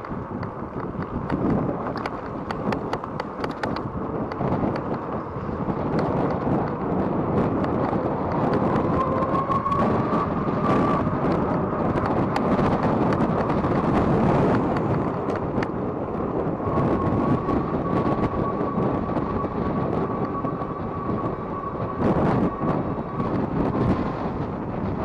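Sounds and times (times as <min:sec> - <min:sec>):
wind buffeting microphone: 0:00.0 - 0:25.0
clicks and rattles: 0:00.4 - 0:05.0.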